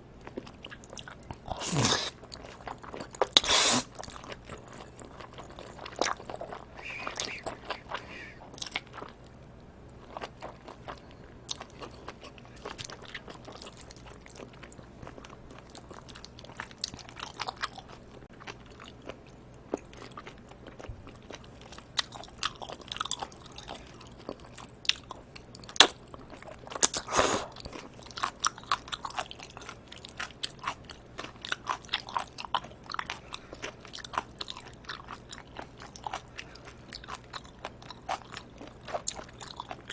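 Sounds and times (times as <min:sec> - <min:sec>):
person chewing and biting food: 0:00.2 - 0:09.4, 0:10.0 - 0:39.9
loud eating smacks: 0:01.4 - 0:02.2.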